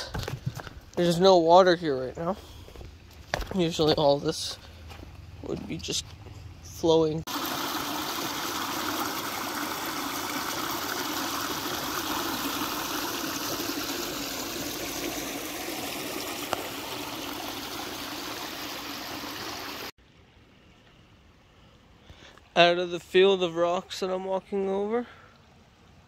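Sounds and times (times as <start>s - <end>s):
creek water rushing: 7.3s - 19.9s.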